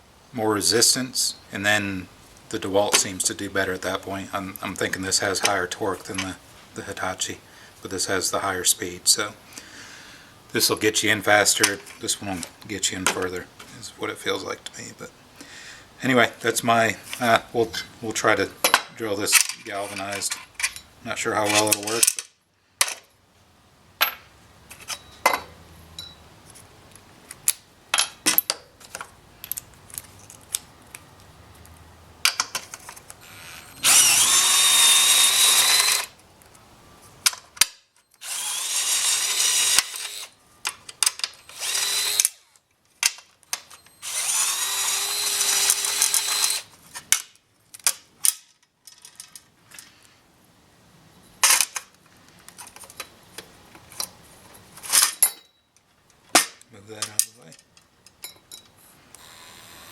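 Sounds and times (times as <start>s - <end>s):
screwdriver drilling into sheet metal: 33.2s - 36.1s, 38.2s - 40.4s, 41.4s - 42.4s, 43.9s - 46.7s, 59.2s - 59.9s.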